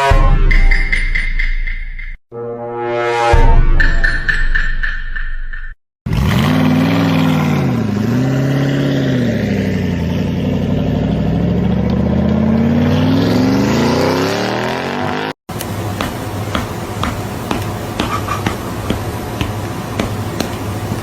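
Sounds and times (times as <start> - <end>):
car engine accelerating: 6.1 - 15.4.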